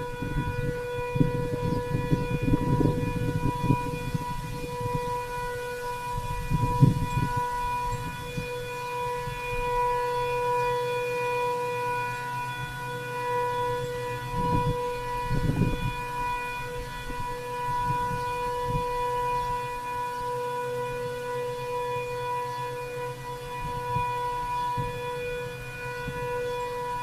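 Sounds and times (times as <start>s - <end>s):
warning siren steady tone: 0.0s - 27.0s.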